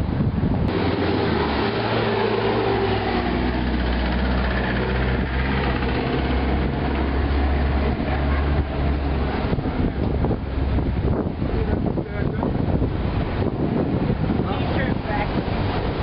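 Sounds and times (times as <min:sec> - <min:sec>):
heavy engine droning: 0:00.6 - 0:16.0.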